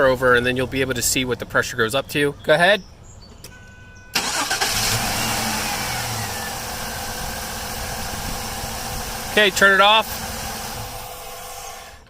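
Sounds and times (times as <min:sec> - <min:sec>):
car engine starting and running: 0:04.1 - 0:12.0.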